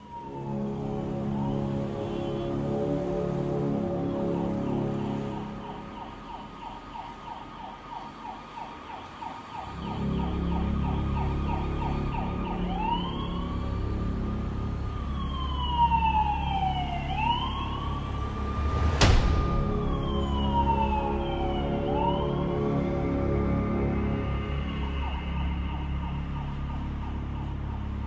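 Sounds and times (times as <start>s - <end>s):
emergency vehicle siren: 0.0s - 28.0s
steady low rumble: 13.5s - 24.3s.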